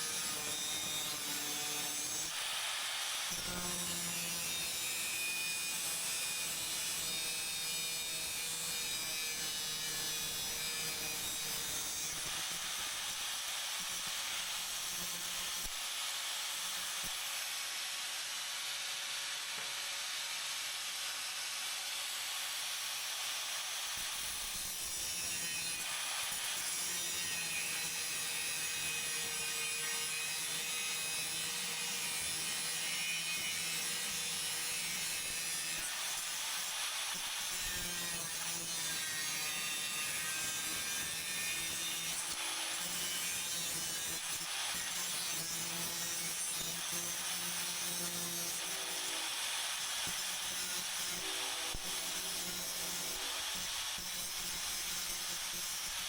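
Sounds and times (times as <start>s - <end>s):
power tool rasping on steel: 0.0s - 56.0s.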